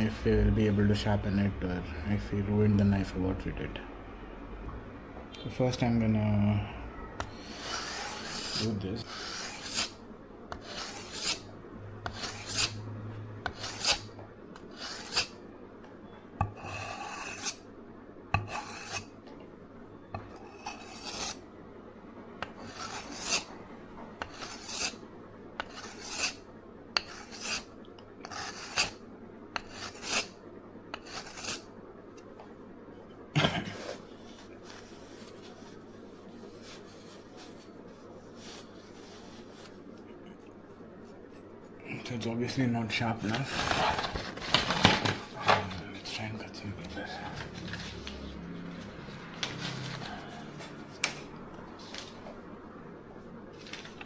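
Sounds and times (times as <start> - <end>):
knife rasping on whetstone: 7.3 - 12.8, 13.5 - 15.4, 16.5 - 17.6, 18.4 - 19.1, 20.4 - 21.4, 22.6 - 23.5, 24.2 - 25.0, 25.6 - 26.4, 27.0 - 29.0, 29.6 - 30.3, 31.0 - 31.7.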